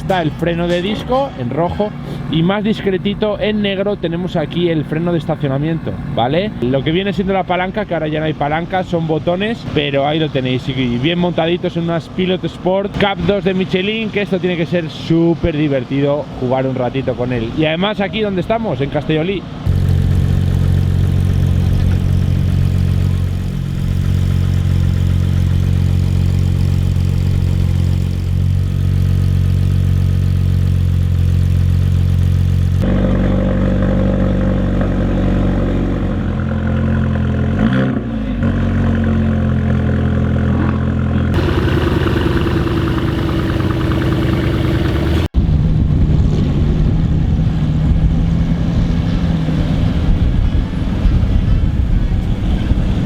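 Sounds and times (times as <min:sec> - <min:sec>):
car engine idling: 0:00.0 - 0:06.8, 0:19.7 - 0:35.1, 0:41.2 - 0:45.3
cars pulling away: 0:00.0 - 0:06.8, 0:19.5 - 0:53.0
car engine revving: 0:01.5 - 0:06.6, 0:19.6 - 0:45.3.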